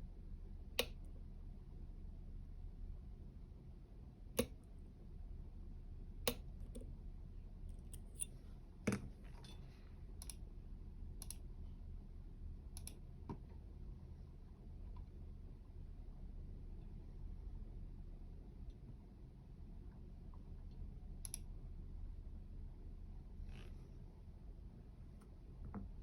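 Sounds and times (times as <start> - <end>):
low steady hum: 0.0 - 26.0
lock picking tools clicking: 7.8 - 8.3.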